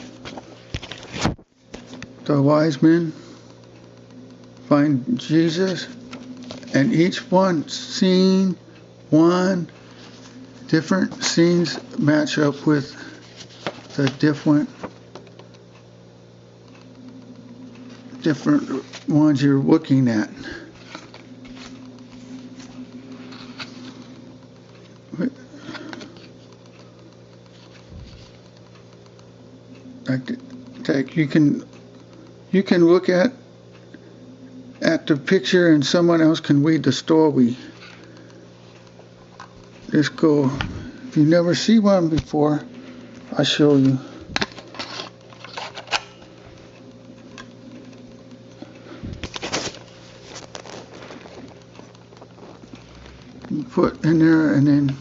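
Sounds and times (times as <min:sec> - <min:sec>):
low hum: 0:01.7 - 0:36.7
hands handling paper and reels: 0:09.2 - 0:15.8, 0:16.7 - 0:29.3, 0:41.2 - 0:55.0.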